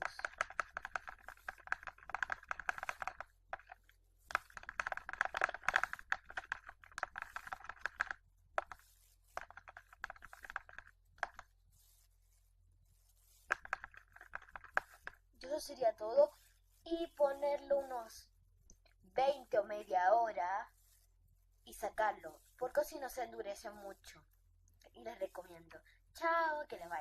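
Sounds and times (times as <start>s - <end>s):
utensil stirring thick slime: 0.0s - 18.1s.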